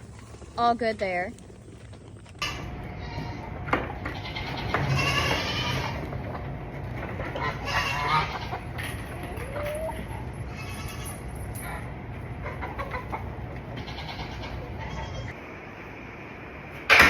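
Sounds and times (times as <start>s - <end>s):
goats bleating: 2.4s - 6.2s, 7.3s - 11.3s, 12.8s - 15.4s.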